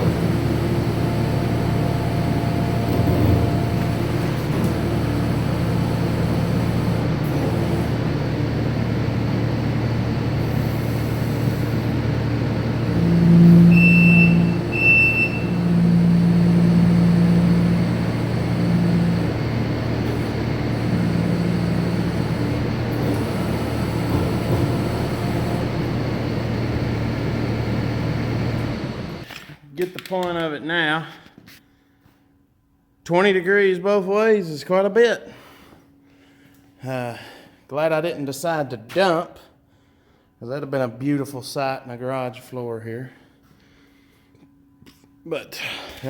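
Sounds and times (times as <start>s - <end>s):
diesel engine running: 0.0s - 29.3s
short beeps: 13.4s - 15.6s.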